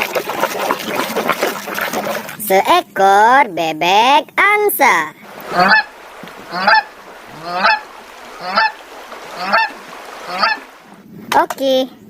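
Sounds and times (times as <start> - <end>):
goose honking: 5.3 - 10.9.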